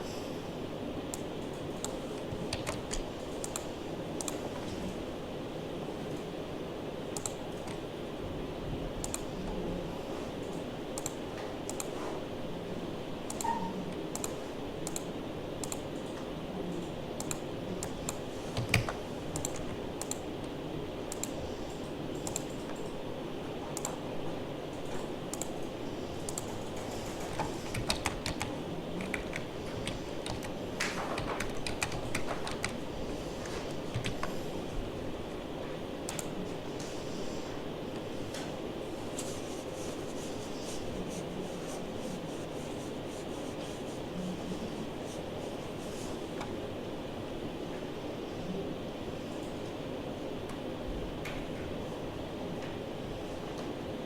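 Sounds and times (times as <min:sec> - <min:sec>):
low background hum: 0:00.0 - 0:54.0
keyboard and mouse clicking: 0:01.1 - 0:04.4, 0:07.1 - 0:07.8, 0:09.0 - 0:09.3, 0:10.5 - 0:11.9, 0:13.3 - 0:16.2, 0:17.2 - 0:20.3, 0:21.1 - 0:21.4, 0:22.2 - 0:22.9, 0:23.8 - 0:24.0, 0:25.3 - 0:25.6, 0:26.2 - 0:32.8, 0:33.9 - 0:34.3, 0:36.0 - 0:36.4.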